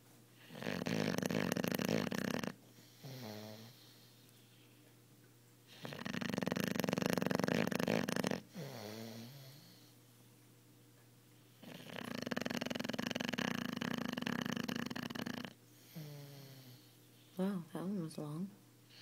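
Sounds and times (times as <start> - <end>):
puppy snoring: 0.4 - 4.2, 5.7 - 10.0, 11.5 - 17.0.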